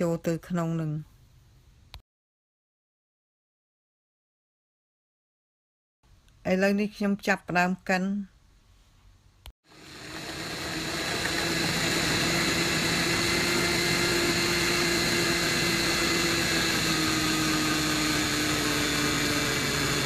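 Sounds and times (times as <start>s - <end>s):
food processor motor running: 9.6s - 20.0s.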